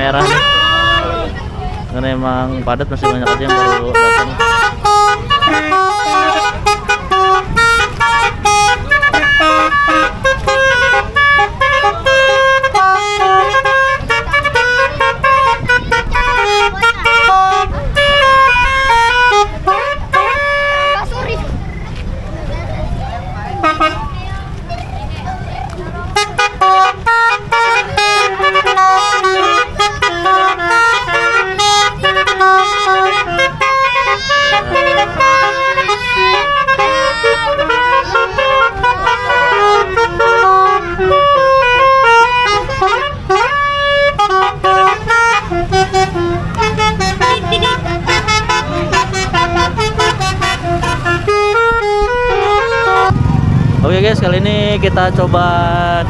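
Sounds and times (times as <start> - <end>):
low engine rumble: 0.0 - 56.0
musical vehicle horns: 0.0 - 56.0.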